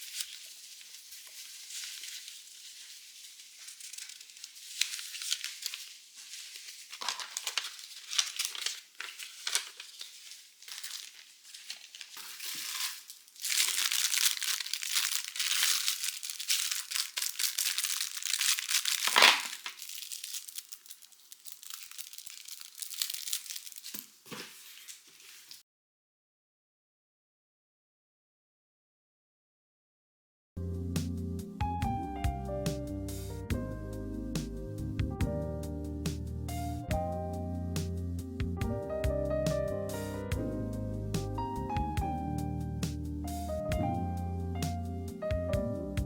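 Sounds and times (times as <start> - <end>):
packaging crinkling: 0.0 - 25.6.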